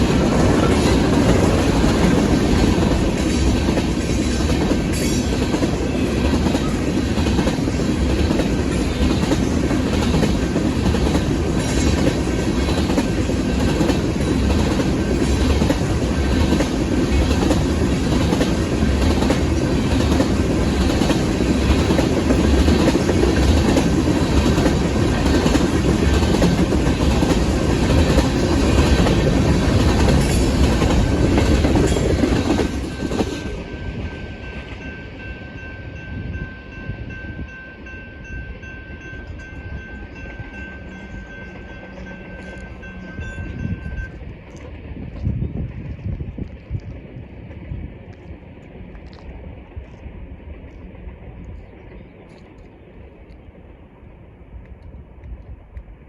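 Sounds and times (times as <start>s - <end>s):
train wheels clacking over rail joints: 0.0s - 33.5s
train rumble: 0.0s - 56.0s
crossing bell ringing: 30.0s - 44.3s.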